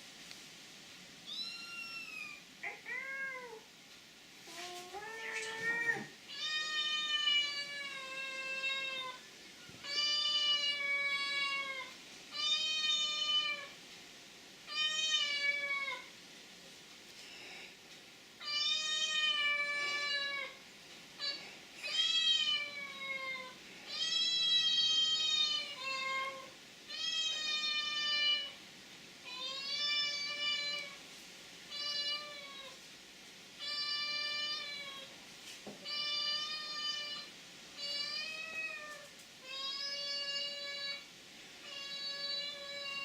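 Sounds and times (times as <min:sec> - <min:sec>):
cat meowing: 0:01.3 - 0:03.6.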